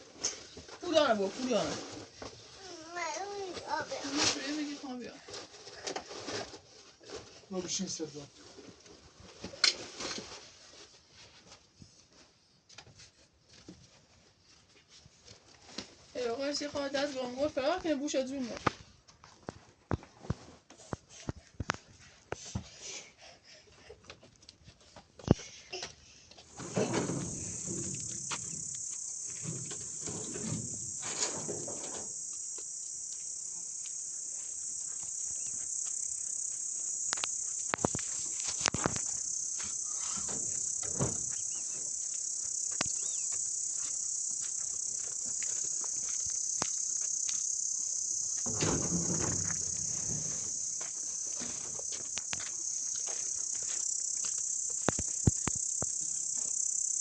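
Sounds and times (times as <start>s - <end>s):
insects chirping: 0.0s - 6.9s, 15.6s - 18.6s, 25.3s - 57.0s.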